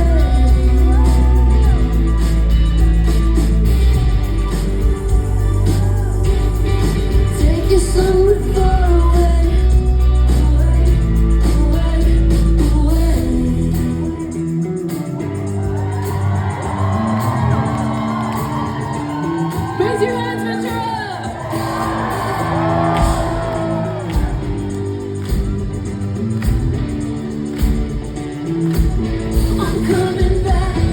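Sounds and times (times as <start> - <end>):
deep bass: 0.0 - 14.8
person singing: 0.0 - 15.9, 29.2 - 30.9
live pop band: 0.0 - 30.9
audience shouting: 14.9 - 26.7.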